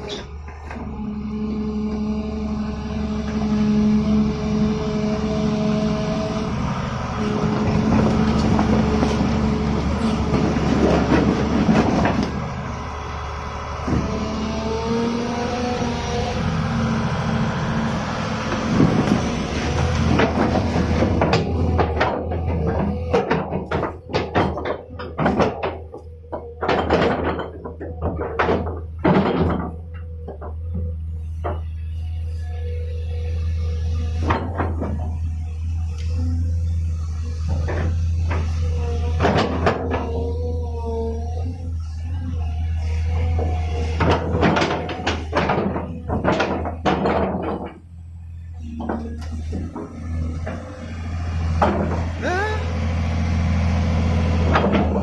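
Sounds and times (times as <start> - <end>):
excavator diesel engine running: 0.0 - 55.0
knocks and clunks: 7.2 - 12.6, 13.8 - 14.4, 18.4 - 32.2, 33.4 - 55.0
metallic clanking and rattling: 7.5 - 12.5, 18.5 - 32.0, 41.3 - 52.3.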